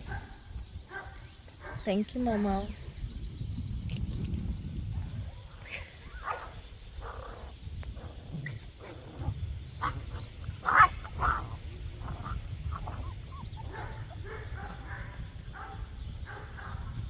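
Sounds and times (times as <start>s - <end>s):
dogs yipping and barking: 0.0s - 1.8s, 5.6s - 17.0s.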